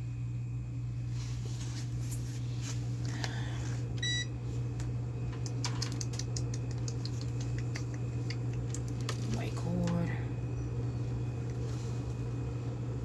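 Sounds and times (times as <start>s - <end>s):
steady low hum: 0.0s - 13.0s
electronic meter beep: 4.0s - 4.3s.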